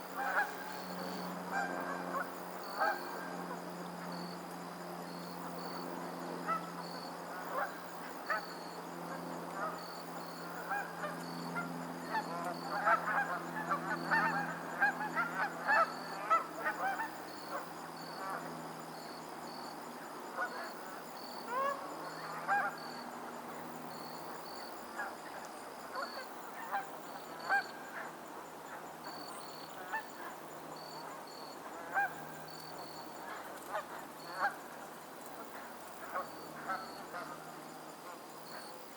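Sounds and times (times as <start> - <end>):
geese honking: 0.2 - 3.2, 10.6 - 17.3.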